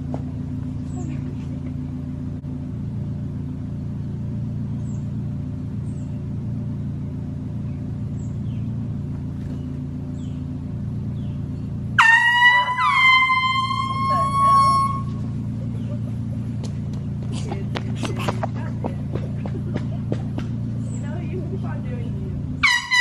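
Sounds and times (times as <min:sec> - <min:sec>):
steady low hum: 0:00.0 - 0:23.0
handheld air horn blasts: 0:12.0 - 0:15.4, 0:22.6 - 0:23.0.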